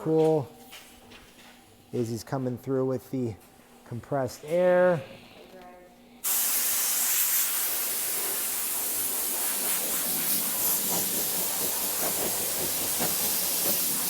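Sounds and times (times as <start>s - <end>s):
compressed air blow gun hissing: 6.2s - 14.0s.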